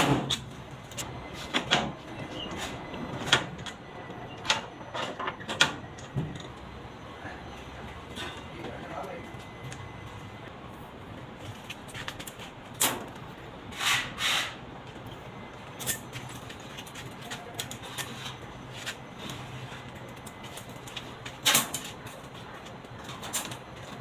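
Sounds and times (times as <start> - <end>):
short scraping sounds: 13.7 - 14.6.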